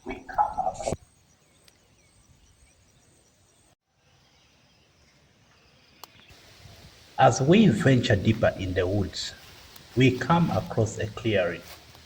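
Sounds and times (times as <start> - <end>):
faint bird chirps: 0.0 - 6.3
faint insect trill: 0.0 - 12.0.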